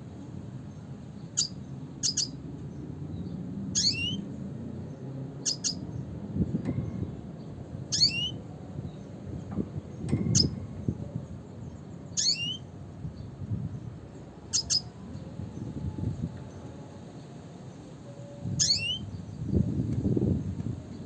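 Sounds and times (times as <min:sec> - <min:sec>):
low background rumble: 0:00.0 - 0:17.9
bird high chirps: 0:01.2 - 0:04.4, 0:05.4 - 0:07.0, 0:07.9 - 0:09.1, 0:10.0 - 0:15.7, 0:18.4 - 0:19.5.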